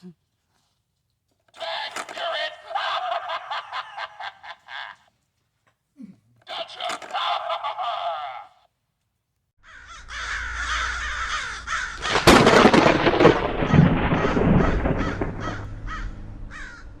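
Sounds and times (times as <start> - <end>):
crows cawing: 1.6 - 4.9, 6.5 - 8.7, 9.6 - 17.0
loud rumbling build: 9.9 - 17.0
sharp thunder-like crash: 11.9 - 17.0.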